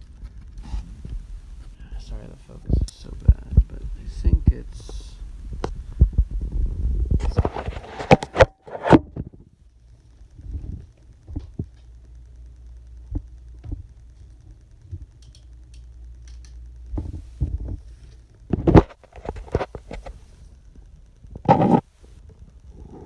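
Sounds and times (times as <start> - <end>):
low steady hum: 0.0 - 23.0
objects being handled clicking: 10.8 - 20.4.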